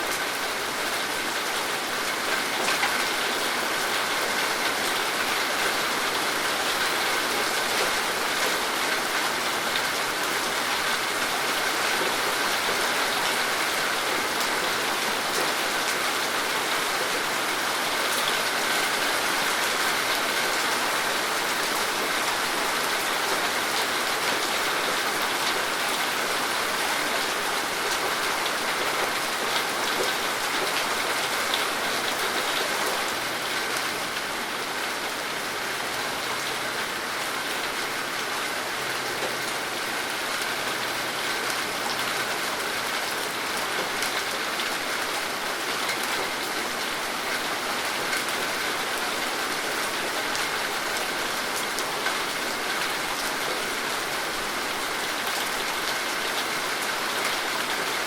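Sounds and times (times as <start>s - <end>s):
steady rain falling: 0.0s - 58.0s.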